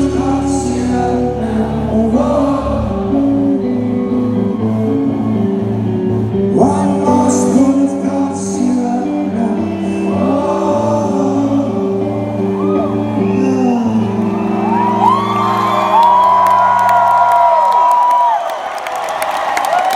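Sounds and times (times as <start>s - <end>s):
person singing: 0.0s - 5.7s, 6.3s - 16.1s
audience shouting and whooping: 3.0s - 6.4s, 12.4s - 19.9s.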